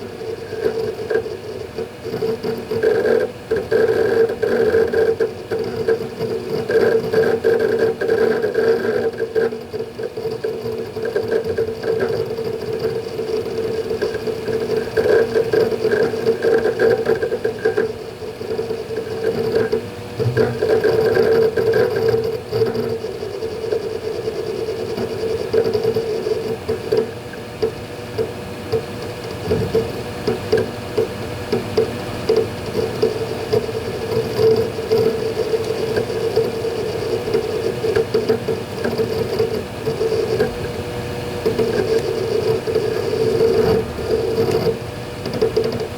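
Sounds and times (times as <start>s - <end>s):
hard drive head seek clatter: 10.1s - 45.9s
steady hum: 17.9s - 24.8s, 31.1s - 45.9s.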